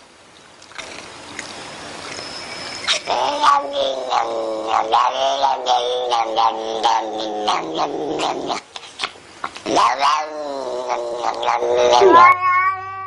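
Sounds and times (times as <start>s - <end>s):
cat yowling: 2.9s - 8.6s, 9.7s - 13.0s.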